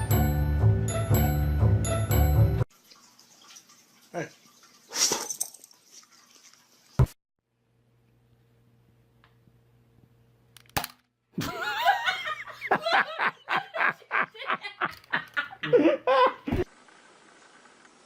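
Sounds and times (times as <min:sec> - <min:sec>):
person laughing hard: 0:11.4 - 0:16.7.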